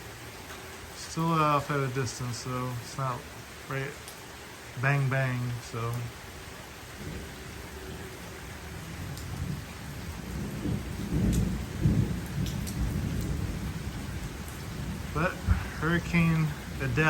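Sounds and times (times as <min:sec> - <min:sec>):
heavy rain: 0:00.0 - 0:17.0
distant thunder rumbling: 0:06.9 - 0:17.0.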